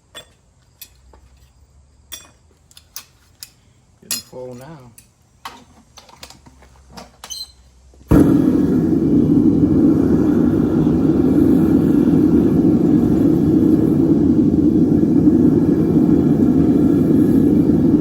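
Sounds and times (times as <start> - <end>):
furnace burner roaring: 7.4 - 18.0.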